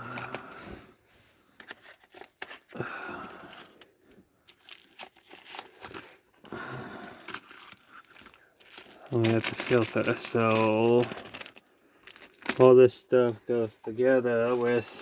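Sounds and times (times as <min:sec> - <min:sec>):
packaging crinkling and tearing: 0:04.5 - 0:06.4, 0:07.0 - 0:12.8, 0:14.4 - 0:15.0.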